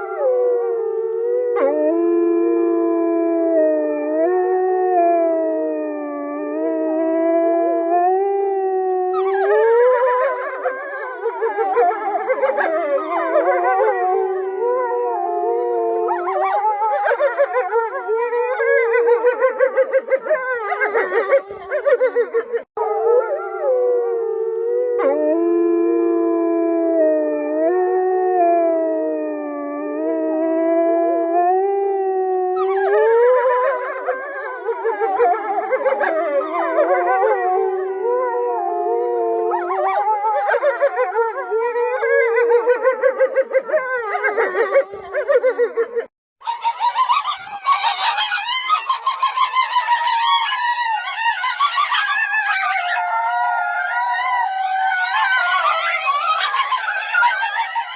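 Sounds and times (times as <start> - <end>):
wolves howling: 0.0 - 57.9.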